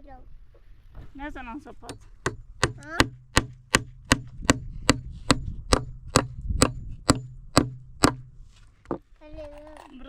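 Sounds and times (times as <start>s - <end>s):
blade chopping wood: 1.8s - 9.0s.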